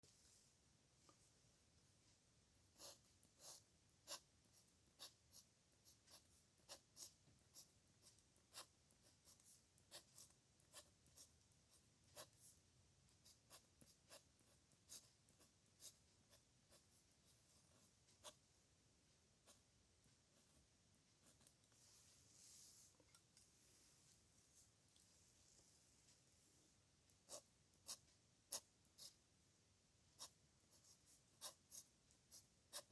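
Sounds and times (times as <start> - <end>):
pen writing on paper: 2.8 - 12.6, 13.2 - 18.4, 27.2 - 29.2, 30.2 - 32.9.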